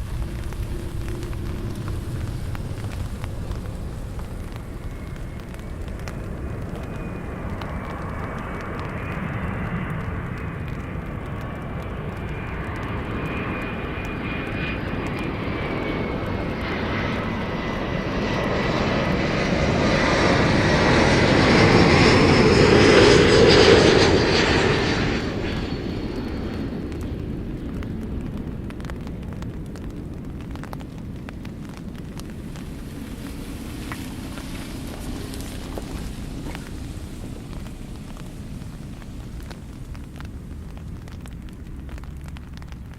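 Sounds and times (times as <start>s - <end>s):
airliner engines passing: 0.0s - 42.9s.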